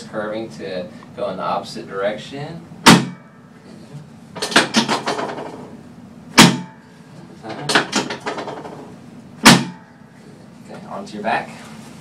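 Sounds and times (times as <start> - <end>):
chiropractic table loud clack: 2.8 - 3.3, 4.4 - 6.8, 7.4 - 9.9
chiropractic table clicks: 4.4 - 5.7, 7.4 - 9.8.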